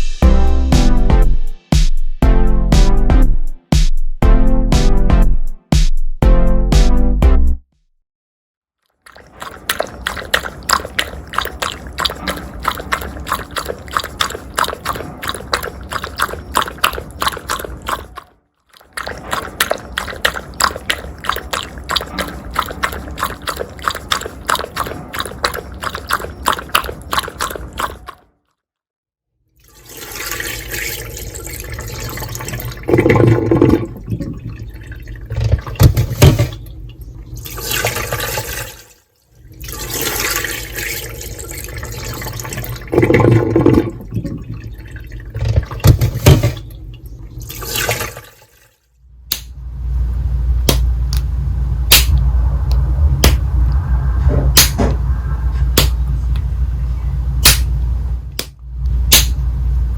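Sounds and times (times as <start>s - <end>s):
water dripping and splashing: 8.8s - 28.3s, 29.6s - 49.6s, 51.9s - 56.5s, 57.4s - 57.8s
toilet flushing: 9.0s - 28.3s, 29.6s - 48.8s.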